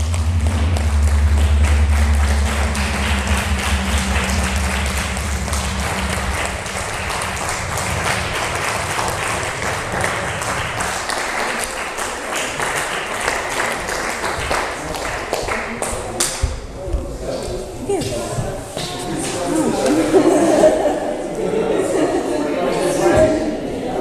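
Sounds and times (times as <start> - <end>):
low drone: 0.0 - 11.9
audience applauding: 0.0 - 16.3.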